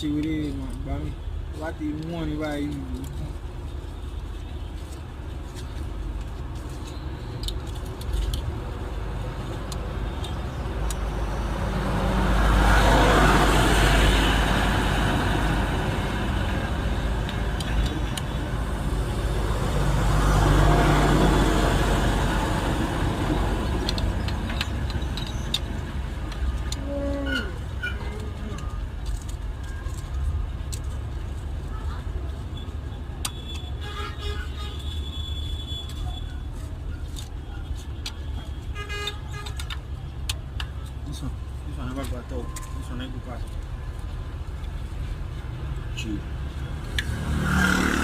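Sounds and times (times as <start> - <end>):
motor vehicle passing: 46.8 - 48.0.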